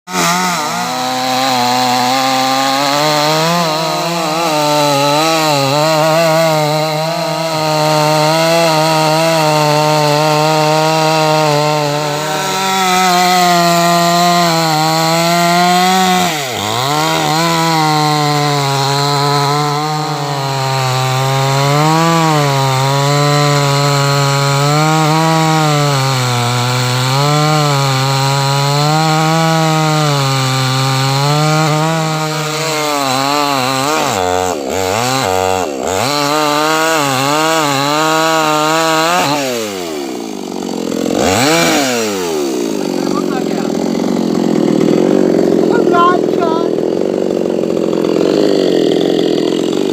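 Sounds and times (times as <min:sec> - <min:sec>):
chainsaw cutting wood: 0:00.1 - 0:49.9.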